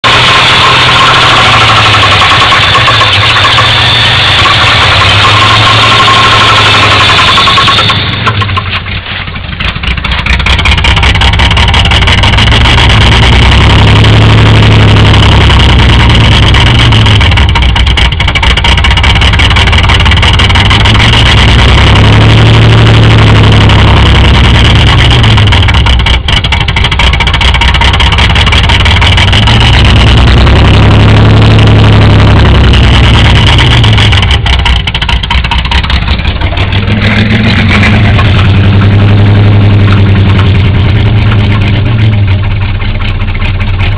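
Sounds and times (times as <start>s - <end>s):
car engine knocking and revving: 0.0s - 43.9s.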